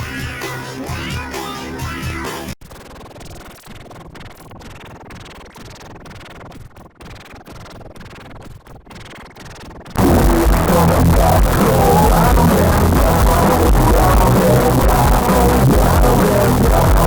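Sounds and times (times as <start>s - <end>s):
harsh distorted static noise: 10.0s - 17.0s.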